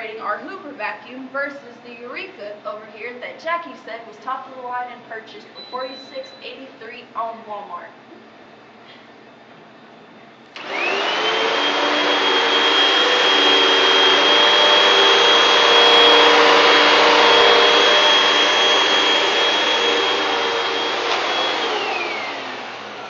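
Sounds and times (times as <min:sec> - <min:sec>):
vacuum cleaner motor whine: 0:10.6 - 0:23.0.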